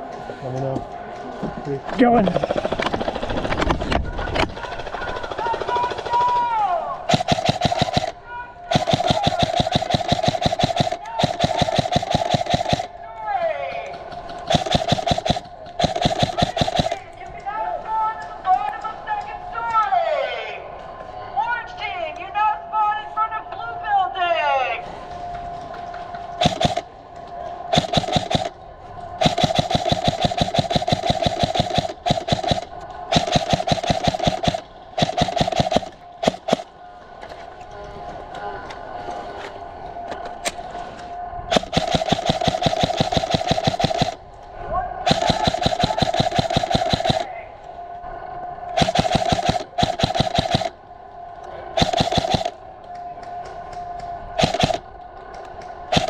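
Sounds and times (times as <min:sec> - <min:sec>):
airsoft rifle firing bursts: 0:04.5 - 0:13.0, 0:13.7 - 0:17.1, 0:26.4 - 0:26.9, 0:27.7 - 0:36.7, 0:41.5 - 0:44.3, 0:45.0 - 0:47.4, 0:48.8 - 0:50.8, 0:51.8 - 0:52.6, 0:54.4 - 0:54.9.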